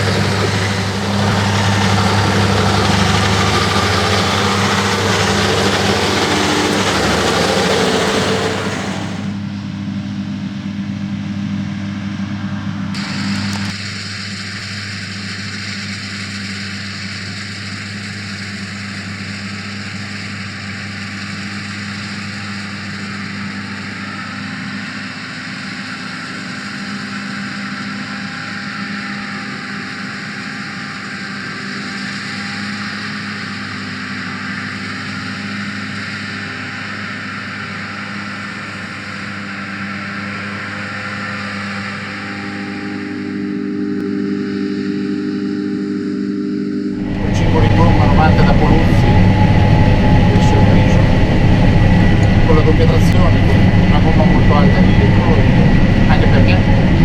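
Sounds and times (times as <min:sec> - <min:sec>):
combine harvester engine drone: 0:00.0 - 0:57.0.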